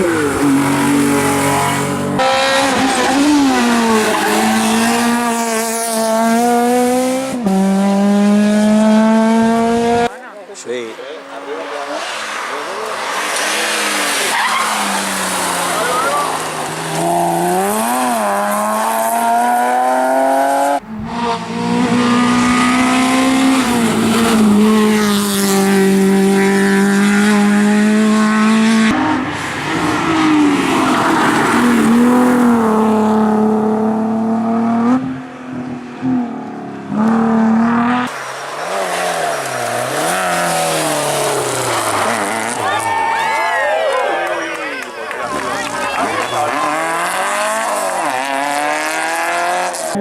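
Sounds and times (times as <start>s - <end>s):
rally car engines at high revs: 0.0s - 10.2s, 11.2s - 43.2s, 44.8s - 50.0s.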